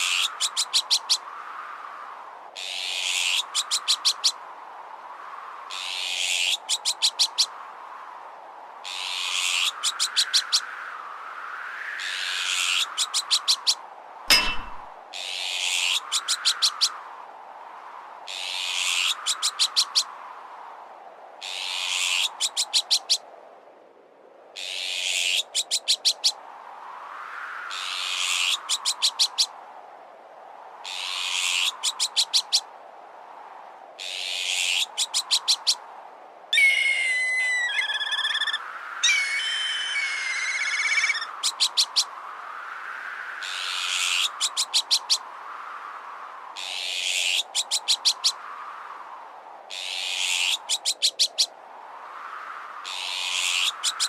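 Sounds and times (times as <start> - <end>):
gusting wind: 0.0 - 54.0
harsh bird alarm call: 14.3 - 14.9, 36.6 - 42.1
warbling whistled bird call: 36.5 - 42.1.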